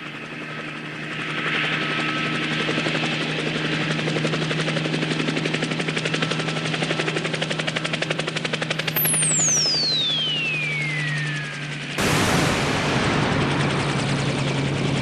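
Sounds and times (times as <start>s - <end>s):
helicopter engine hum: 0.0s - 15.0s
helicopter rotor beat: 0.0s - 15.0s
high falling whistle: 8.9s - 14.7s.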